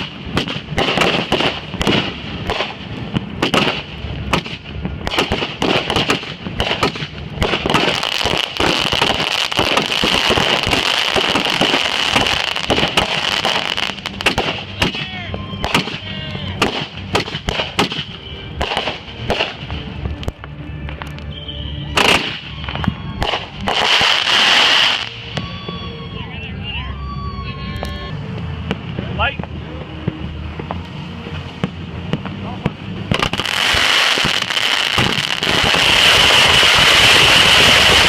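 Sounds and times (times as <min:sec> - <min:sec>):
fireworks bangs and crackles: 0:00.0 - 0:26.2, 0:28.1 - 0:38.0
gliding fireworks whistles: 0:00.0 - 0:28.2, 0:33.0 - 0:38.0
high fireworks whistle: 0:03.4 - 0:20.0, 0:20.8 - 0:28.2, 0:33.1 - 0:38.0.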